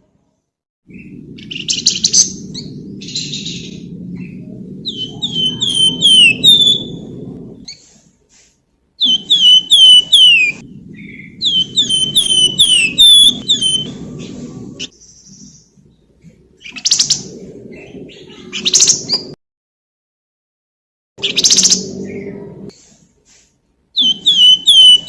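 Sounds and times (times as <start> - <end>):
bird whistling flute-like notes: 4.9 - 7.1, 9.0 - 10.6, 11.4 - 14.0, 24.0 - 25.0
bird harsh chattering: 5.0 - 7.0, 9.1 - 10.6, 11.5 - 13.9.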